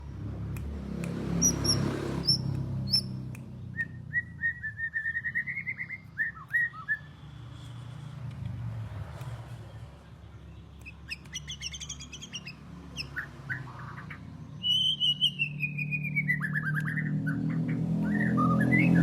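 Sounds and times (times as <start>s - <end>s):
bird whistling and chirping: 1.4s - 7.2s, 10.8s - 19.0s.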